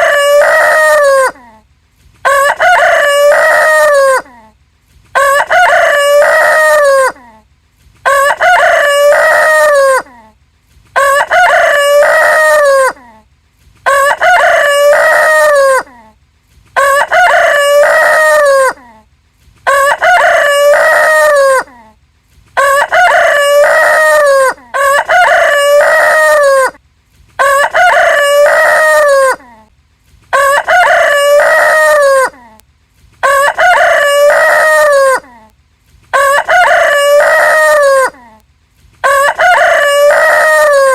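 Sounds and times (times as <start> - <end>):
rooster crowing: 0.0 - 1.4, 2.2 - 4.3, 5.2 - 7.2, 8.0 - 10.1, 11.0 - 13.0, 13.9 - 15.9, 16.8 - 18.8, 19.7 - 21.7, 22.6 - 26.8, 27.4 - 29.4, 30.3 - 32.4, 33.2 - 35.3, 36.1 - 38.2, 39.0 - 40.9.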